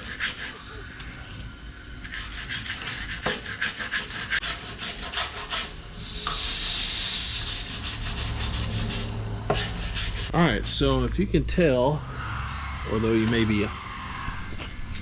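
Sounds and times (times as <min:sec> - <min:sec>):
steady hiss: 0:05.9 - 0:08.5.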